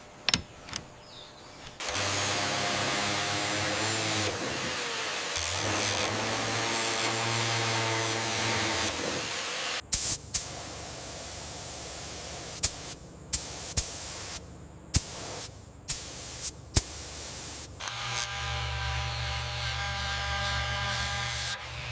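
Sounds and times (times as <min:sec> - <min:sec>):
small electric motor running: 0:01.8 - 0:09.8, 0:17.8 - 0:21.9
spraying hiss: 0:08.3 - 0:17.8.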